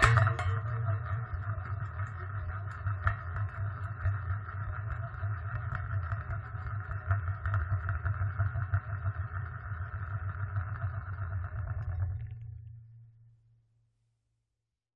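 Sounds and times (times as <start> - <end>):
tin lid spinning and rattling: 0.0 - 6.8.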